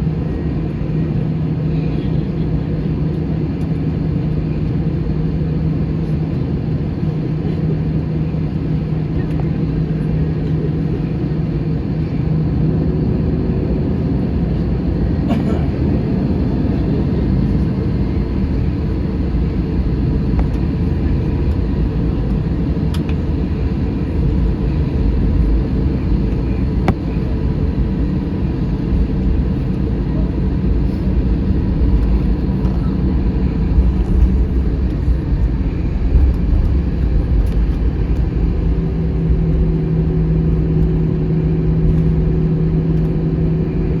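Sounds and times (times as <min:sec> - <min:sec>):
aircraft engines rumbling: 0:00.0 - 0:44.0
steady hum: 0:14.5 - 0:44.0.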